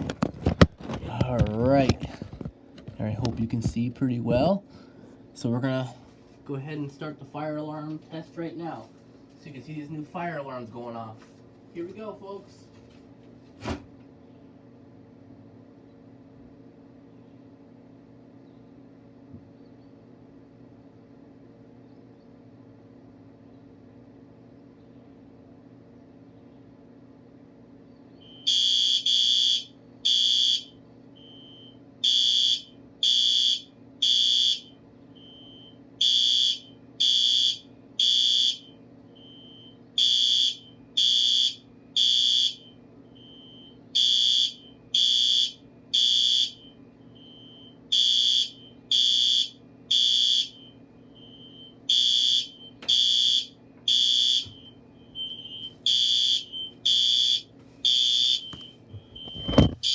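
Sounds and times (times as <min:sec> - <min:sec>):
fire alarm horn beeps: 0:28.2 - 0:59.9.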